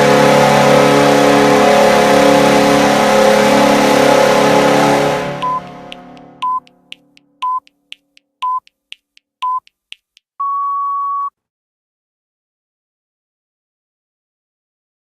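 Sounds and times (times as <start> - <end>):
goal horn blast: 0.0 - 6.4
timer ticking: 5.4 - 10.5
countdown timer beeps: 5.4 - 11.3.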